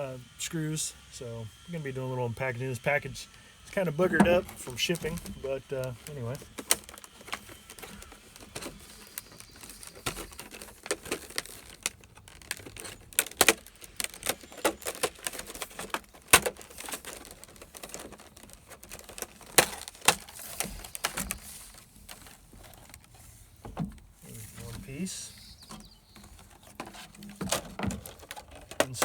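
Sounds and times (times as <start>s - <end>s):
crinkling: 1.5s - 29.0s
package being opened by hand: 3.8s - 23.2s.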